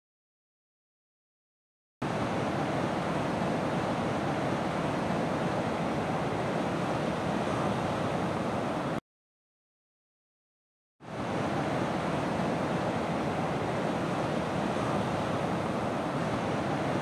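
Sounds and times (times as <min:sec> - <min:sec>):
ocean waves breaking on beach: 0:02.0 - 0:09.0, 0:11.0 - 0:17.0.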